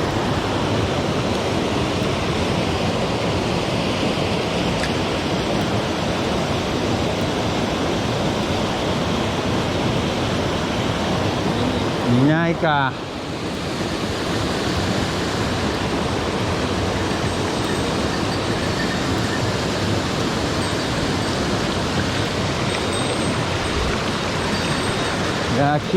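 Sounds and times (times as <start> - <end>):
stream water rushing: 0.0 - 25.9.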